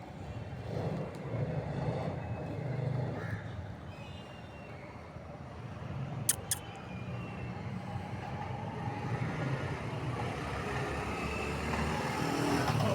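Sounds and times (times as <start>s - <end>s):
sharp clicks: 6.3s - 6.6s.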